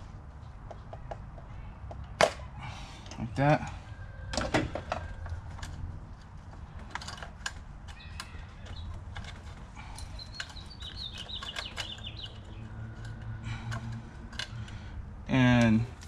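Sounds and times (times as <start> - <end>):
high chirping: 10.0 - 12.8.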